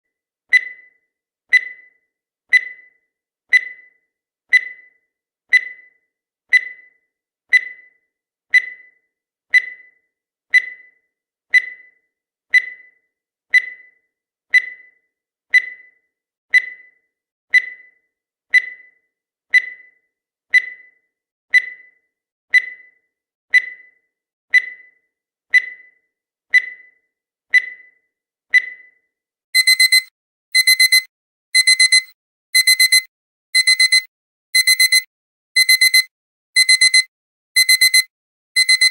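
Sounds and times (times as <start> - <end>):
timer ticking: 0.5 - 0.9, 1.5 - 2.9, 3.5 - 3.9, 4.5 - 4.9, 5.5 - 5.9, 6.5 - 6.9, 7.5 - 7.9, 8.5 - 8.9, 9.5 - 9.9, 12.5 - 12.9, 14.5 - 14.9, 21.5 - 21.9, 23.5 - 23.9, 25.5 - 25.9, 26.5 - 26.9, 29.6 - 38.9.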